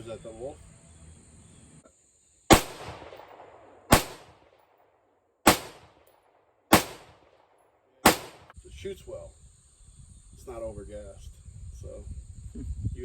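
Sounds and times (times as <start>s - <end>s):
rifle shots echoing: 2.5s - 4.8s, 5.5s - 8.5s.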